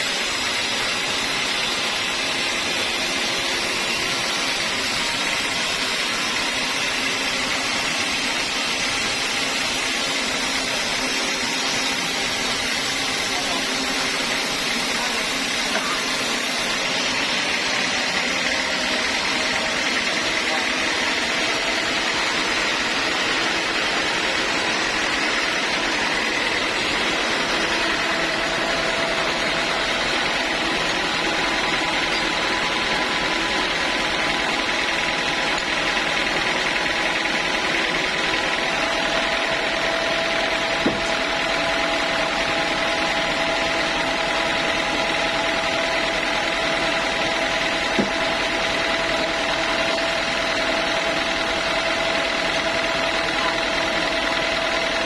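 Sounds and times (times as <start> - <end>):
sawmill machinery humming: 0.0 - 55.0
steady machine whine: 0.0 - 55.0.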